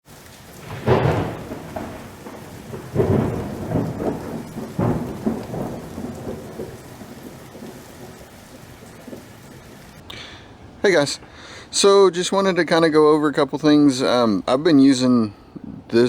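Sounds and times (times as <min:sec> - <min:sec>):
thunder rumbling: 0:00.0 - 0:10.8
steady rain: 0:00.0 - 0:16.0.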